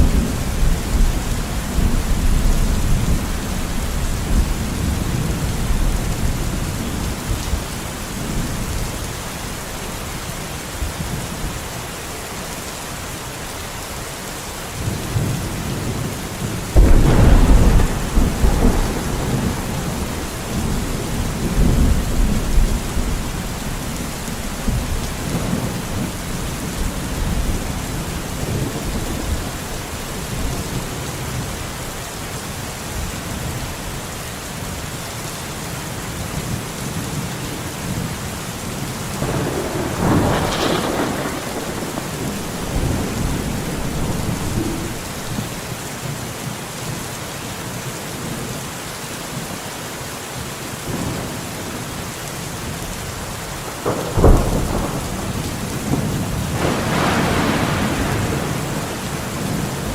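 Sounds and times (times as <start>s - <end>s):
steady rain: 0.0s - 59.9s
thunder rumbling: 14.8s - 31.4s, 39.1s - 45.7s, 53.6s - 59.9s
sharp thunderclap: 16.7s - 23.8s, 39.2s - 45.6s, 53.8s - 59.9s.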